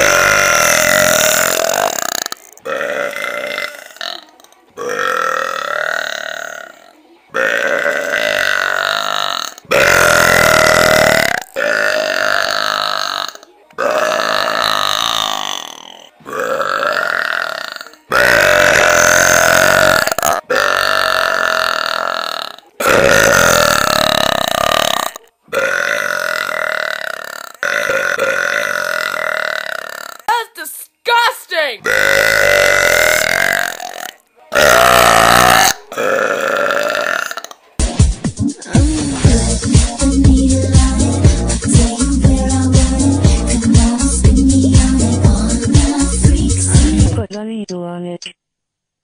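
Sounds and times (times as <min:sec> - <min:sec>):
person belching: 0:00.0 - 0:30.3, 0:31.8 - 0:37.6.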